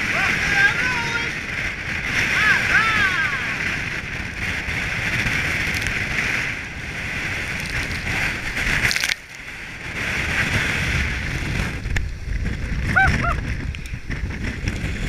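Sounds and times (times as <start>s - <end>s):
wind buffeting microphone: 0.0s - 15.0s
rushing sloshing water: 4.4s - 10.8s.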